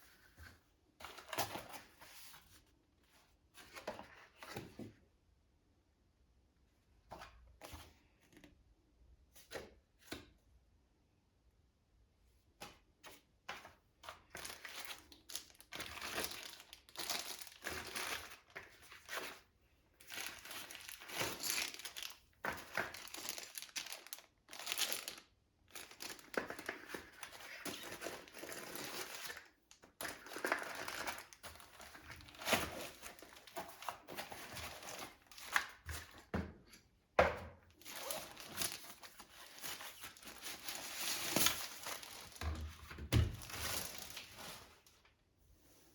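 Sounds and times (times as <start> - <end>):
packaging crinkling and rustling: 14.3 - 36.3, 37.7 - 45.1
packaging tearing: 14.4 - 18.5, 20.1 - 29.4, 37.8 - 42.4.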